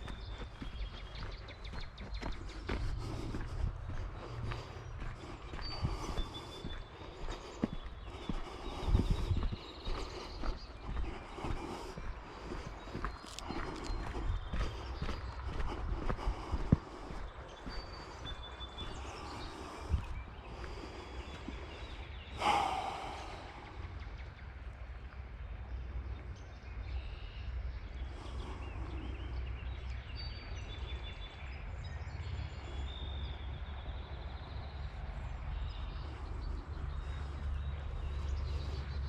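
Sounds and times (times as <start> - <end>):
steady low rumble: 0.0 - 29.9, 34.9 - 39.0
loud breath: 2.6 - 24.0.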